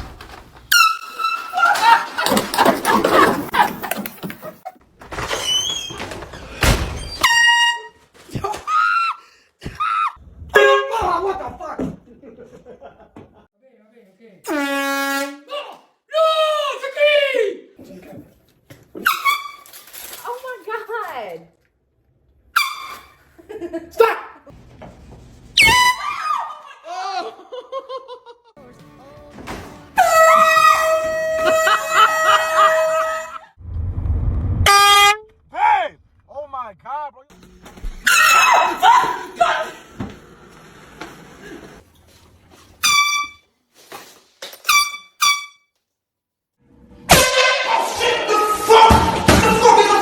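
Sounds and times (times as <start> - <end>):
laughter: 1.6 - 4.8, 11.2 - 13.5, 23.4 - 24.5, 26.6 - 28.6, 31.4 - 33.4
air horn blasts: 10.5 - 11.0, 14.5 - 15.5, 30.0 - 33.4, 34.6 - 35.3, 44.7 - 45.6
air horn blast: 14.5 - 15.5, 34.6 - 35.3
person yelling: 15.5 - 17.7.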